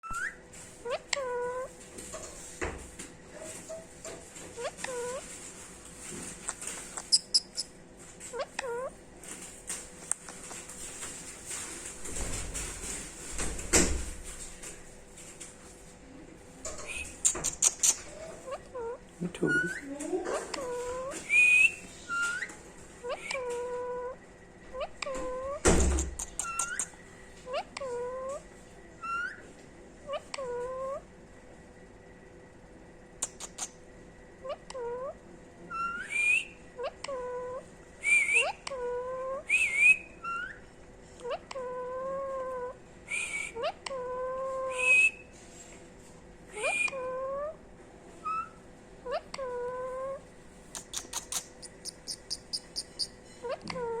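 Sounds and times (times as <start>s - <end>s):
parakeet calling: 0.0s - 1.7s, 6.5s - 9.0s, 20.5s - 28.4s, 29.0s - 29.4s, 34.4s - 45.2s, 46.5s - 47.6s, 48.2s - 50.2s, 50.8s - 54.0s.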